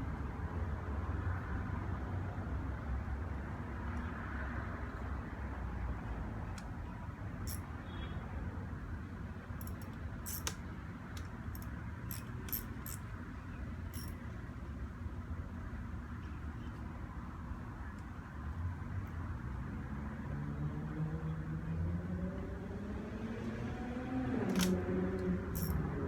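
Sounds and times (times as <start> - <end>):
hand tools clicking and tapping: 9.6 - 10.6, 11.2 - 13.0, 13.9 - 14.2, 25.6 - 25.8.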